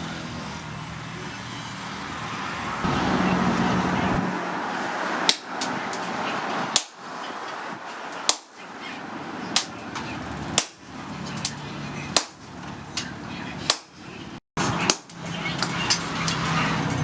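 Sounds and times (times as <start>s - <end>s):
steady background noise: 0.0s - 17.0s
hammer striking steel on anvil: 6.7s - 7.0s.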